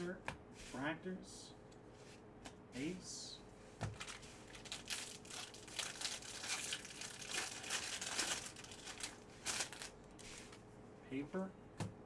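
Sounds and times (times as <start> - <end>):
foil wrapper tearing and crinkling: 4.0 - 10.5.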